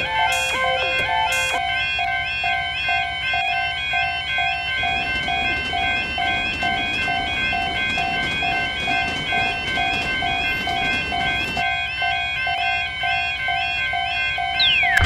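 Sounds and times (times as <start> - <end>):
electronic jingle melody: 0.0 - 2.2, 14.6 - 15.0
synthesized crossing bell clanging: 0.0 - 15.0.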